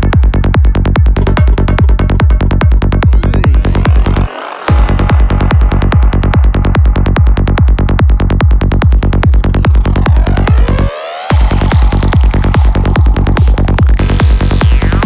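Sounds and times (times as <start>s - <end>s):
kick drum: 0.0s - 15.0s
rolling bassline: 0.0s - 15.0s
layered synths: 2.8s - 5.8s, 8.2s - 15.0s
rising synth sweep: 3.0s - 5.3s, 8.5s - 15.0s.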